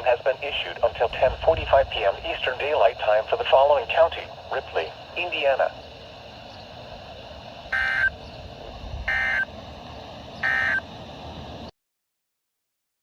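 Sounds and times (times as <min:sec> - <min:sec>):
radio hiss: 0:00.0 - 0:11.7
data bursts: 0:07.7 - 0:08.2, 0:09.1 - 0:09.5, 0:10.4 - 0:10.8.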